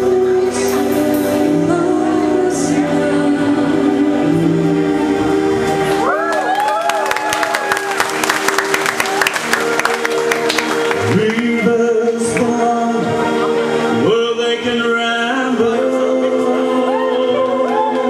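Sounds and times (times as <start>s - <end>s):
live band playing: 0.0s - 18.0s
audience clapping: 6.1s - 12.6s.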